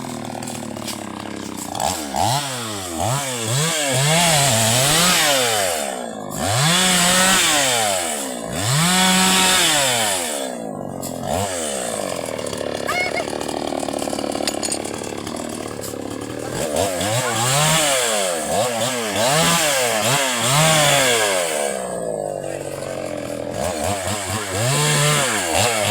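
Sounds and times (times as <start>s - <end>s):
small engine revving: 0.0s - 25.9s.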